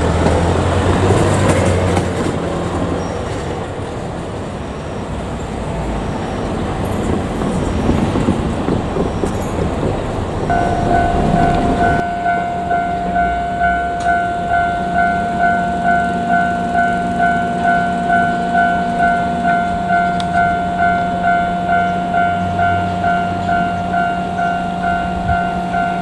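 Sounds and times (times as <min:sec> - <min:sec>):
passing train rumbling: 0:00.0 - 0:26.0
level crossing alarm ringing: 0:10.5 - 0:26.0.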